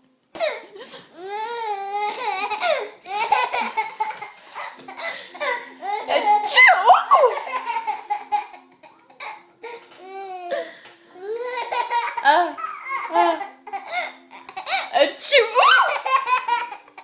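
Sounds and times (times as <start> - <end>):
baby laughing and squealing: 11.4 - 13.5.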